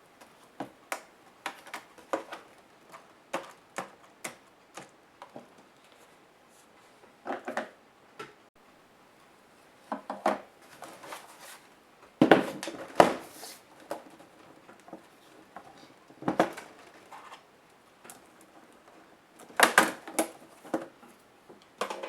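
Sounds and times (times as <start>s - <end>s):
plastic laptop parts clicking and rattling: 0.9s - 5.5s.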